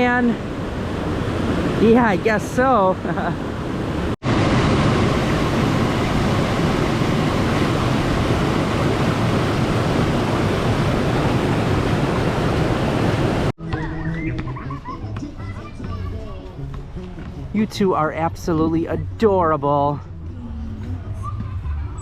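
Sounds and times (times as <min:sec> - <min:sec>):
waterfall rushing: 0:00.4 - 0:13.5.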